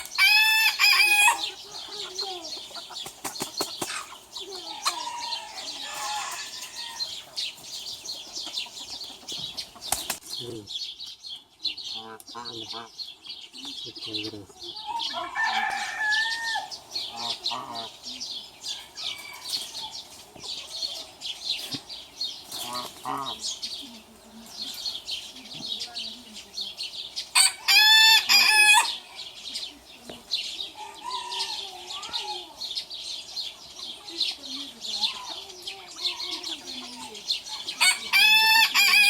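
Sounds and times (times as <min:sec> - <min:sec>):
chickens clucking: 0:00.0 - 0:39.0
rooster crowing: 0:14.8 - 0:16.7, 0:27.4 - 0:29.0, 0:37.8 - 0:39.0.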